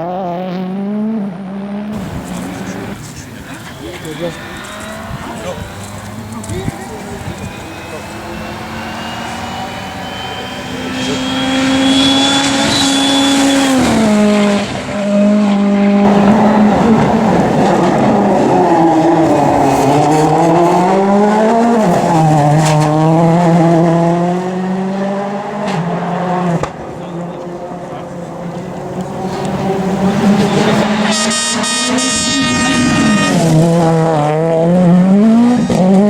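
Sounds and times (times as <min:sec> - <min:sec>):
rally car engine revving: 0:00.0 - 0:36.0
tyre noise: 0:02.0 - 0:14.4.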